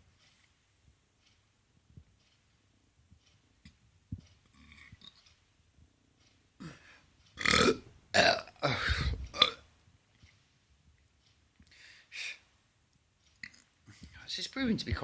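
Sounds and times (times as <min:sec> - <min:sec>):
man belching loudly: 0:07.4 - 0:09.6.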